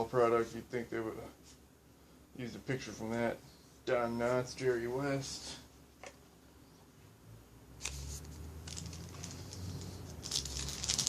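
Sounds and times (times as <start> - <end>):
foil wrapper crinkling: 8.6 - 11.0.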